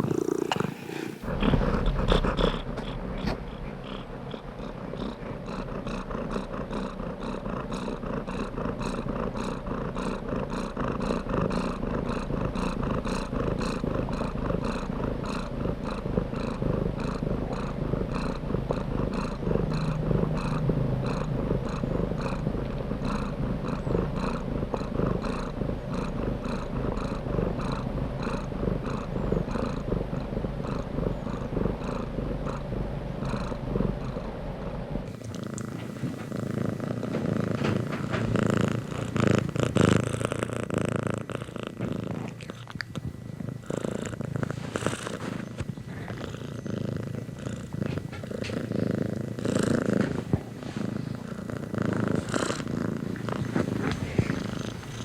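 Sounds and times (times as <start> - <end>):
cat purring: 0.0 - 55.0.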